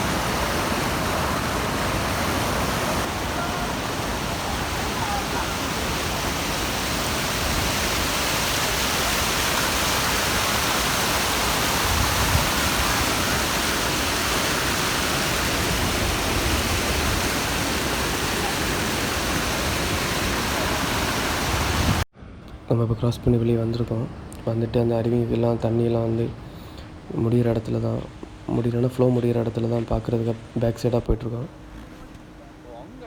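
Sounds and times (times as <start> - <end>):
river water rushing over rocks: 0.0 - 22.0
water cascading down small falls: 0.0 - 22.0.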